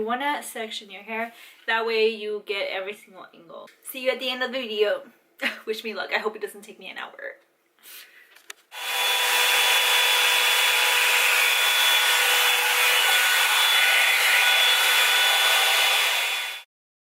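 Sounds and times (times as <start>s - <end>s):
hot-air dryer brush running: 8.7s - 16.7s.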